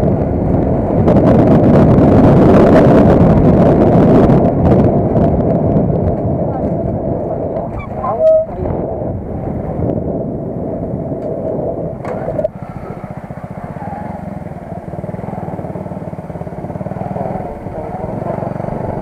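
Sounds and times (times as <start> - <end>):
motorcycle engine running: 0.0 - 19.0
brief loud squeal: 7.8 - 8.5.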